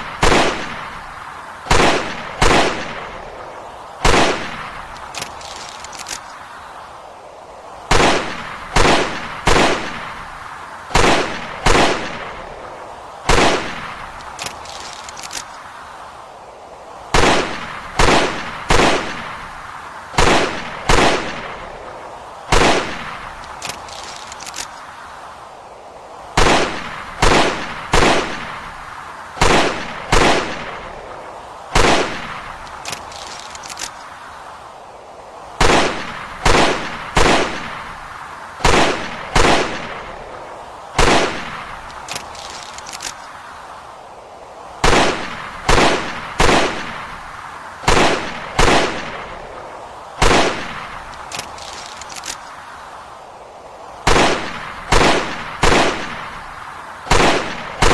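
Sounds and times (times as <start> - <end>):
revolver gunshots with echo: 0.0 - 0.9, 1.7 - 3.2, 4.0 - 4.8, 7.9 - 10.2, 10.9 - 12.4, 13.3 - 14.0, 17.1 - 19.4, 20.2 - 21.6, 22.5 - 23.3, 26.4 - 28.6, 29.4 - 30.8, 31.8 - 32.5, 35.6 - 37.8, 38.6 - 40.1, 41.0 - 41.7, 44.8 - 47.0, 47.9 - 49.2, 50.2 - 51.0, 54.1 - 56.4, 57.1 - 57.9.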